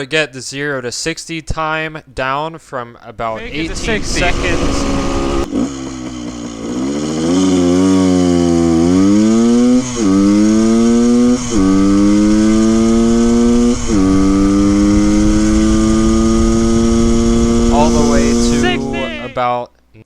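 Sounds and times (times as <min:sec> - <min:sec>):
two-stroke engine accelerating: 0:03.4 - 0:19.4.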